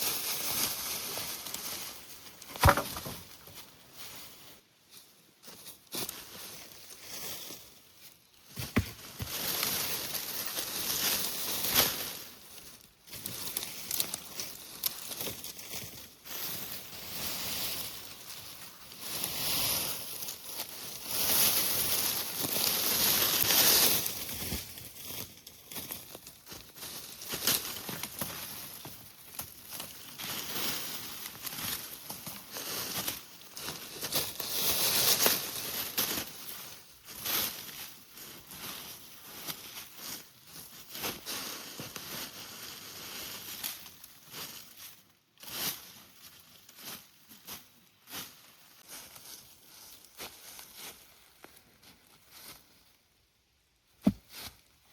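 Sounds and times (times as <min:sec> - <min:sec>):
rustling of forest floor litter: 0:00.0 - 0:54.9.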